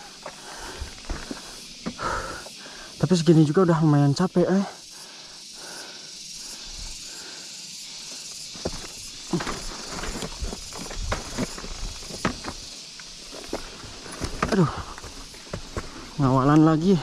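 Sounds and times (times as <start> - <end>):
footsteps on dirt trail: 0.0 - 2.6, 7.9 - 17.0
steady hiss: 0.0 - 17.0.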